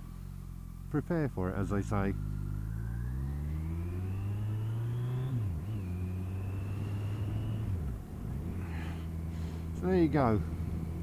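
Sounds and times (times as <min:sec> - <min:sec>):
motorcycle engine accelerating: 0:00.0 - 0:11.0
thin whine: 0:01.6 - 0:10.0.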